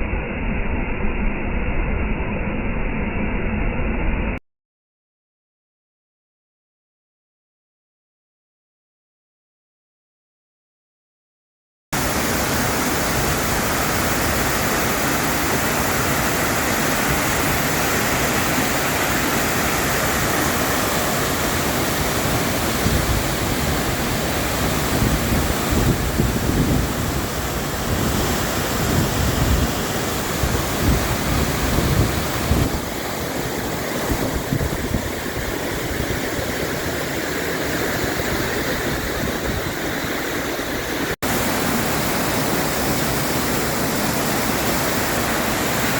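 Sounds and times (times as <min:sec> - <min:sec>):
waterfall roaring: 0:12.0 - 0:45.9.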